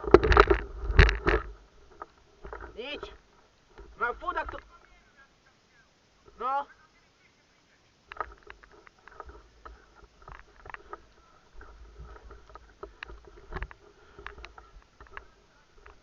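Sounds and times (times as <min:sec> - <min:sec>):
twigs and leaves snapping: 0:00.0 - 0:03.0.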